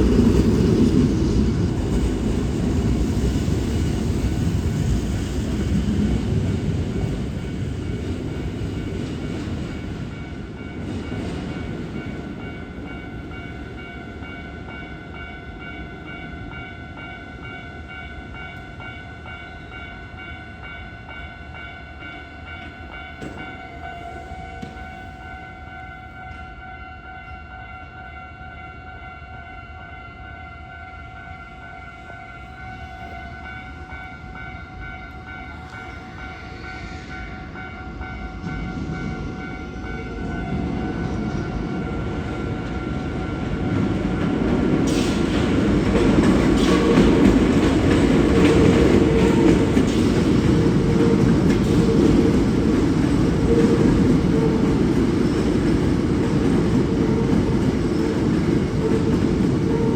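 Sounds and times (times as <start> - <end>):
passing train rumble: 0.0 - 59.9
level crossing warning bell: 7.0 - 44.7.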